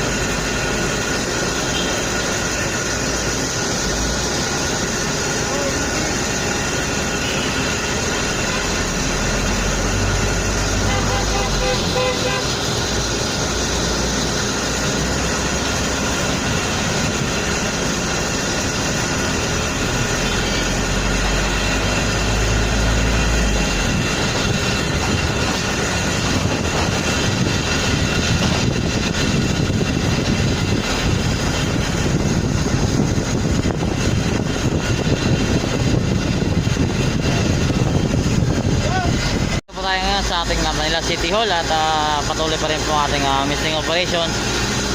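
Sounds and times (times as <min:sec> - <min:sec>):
loud machinery drone: 0:00.0 - 0:44.9.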